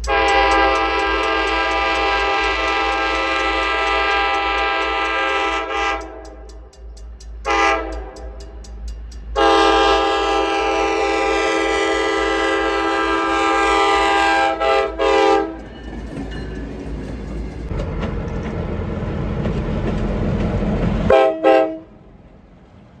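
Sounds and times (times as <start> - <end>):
locomotive air horn: 0.0 - 6.7, 7.4 - 8.5, 9.4 - 15.7, 21.1 - 22.0
low rumble of train: 0.0 - 23.0.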